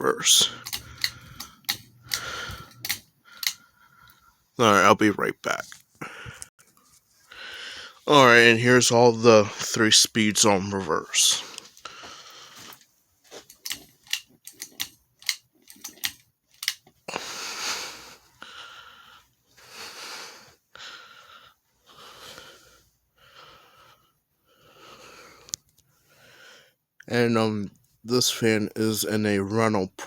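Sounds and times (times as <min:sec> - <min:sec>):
ceiling fan clicks: 0:00.4 - 0:03.6.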